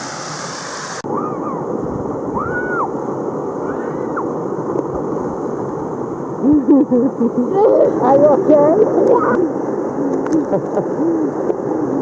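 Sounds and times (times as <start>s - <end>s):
waterfall roaring: 6.5s - 12.0s.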